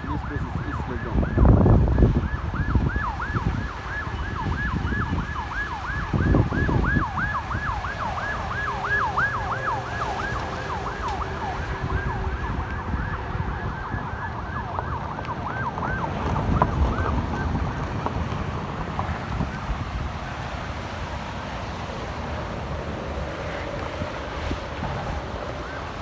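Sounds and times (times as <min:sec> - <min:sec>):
siren yelping: 0:00.0 - 0:18.0, 0:23.2 - 0:26.0
traffic rumble: 0:00.0 - 0:26.0
wind: 0:00.0 - 0:26.0.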